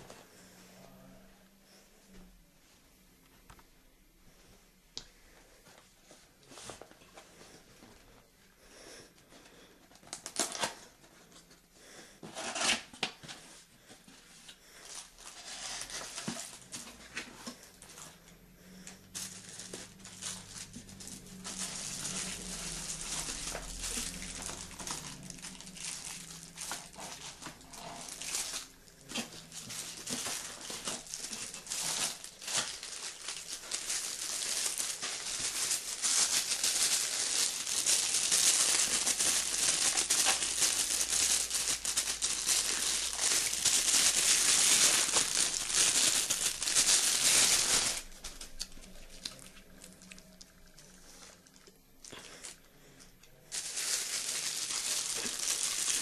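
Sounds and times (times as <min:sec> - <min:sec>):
packaging crinkling and tearing: 0:10.0 - 0:11.0, 0:12.4 - 0:13.3, 0:14.8 - 0:18.0, 0:18.9 - 0:52.7, 0:53.5 - 0:56.0.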